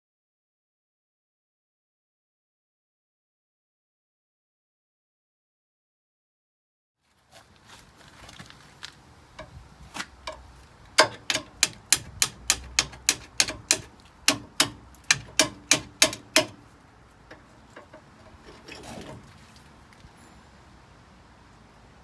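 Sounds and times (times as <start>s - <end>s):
tool clicking on spring compressor: 9.4s - 16.7s, 17.3s - 19.4s.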